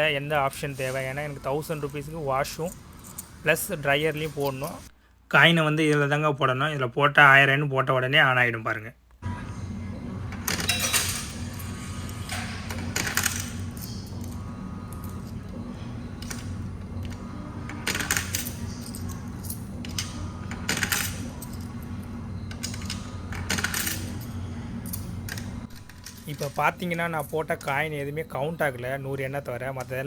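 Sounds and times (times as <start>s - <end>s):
low machine hum: 9.2s - 30.0s
coins clinking into coin slot: 10.3s - 15.6s, 16.2s - 21.9s, 22.5s - 27.9s.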